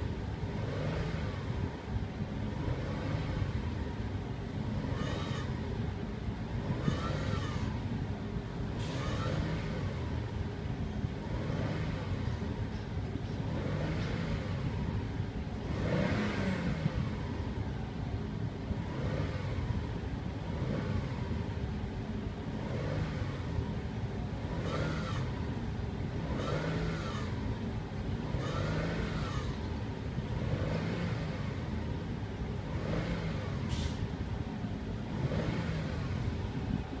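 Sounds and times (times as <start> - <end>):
car engine revving: 0.0 - 1.7, 2.4 - 5.6, 6.5 - 7.7, 11.1 - 12.5, 13.3 - 17.6, 18.7 - 21.6, 22.4 - 34.0, 35.0 - 36.8.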